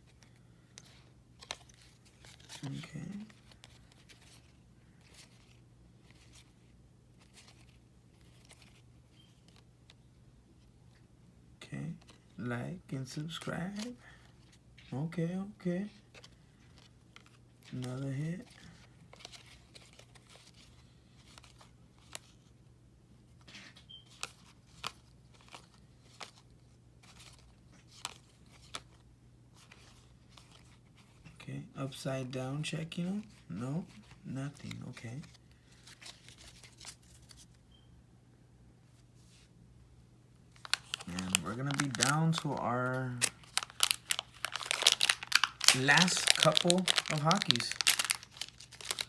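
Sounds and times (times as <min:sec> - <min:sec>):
trading cards rustling: 0:00.0 - 0:06.6, 0:07.2 - 0:09.7, 0:13.0 - 0:14.9, 0:15.5 - 0:22.5, 0:24.0 - 0:31.3, 0:33.0 - 0:37.6, 0:40.5 - 0:49.0
low steady hum: 0:00.0 - 0:49.0.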